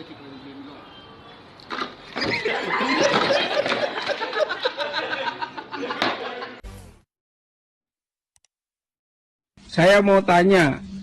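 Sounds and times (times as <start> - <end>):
people laughing loudly: 2.2 - 6.6.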